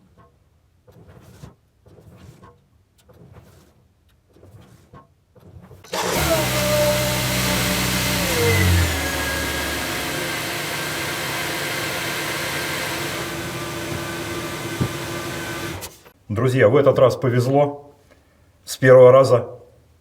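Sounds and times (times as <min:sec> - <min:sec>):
car engine starting and idling: 0:05.9 - 0:16.1.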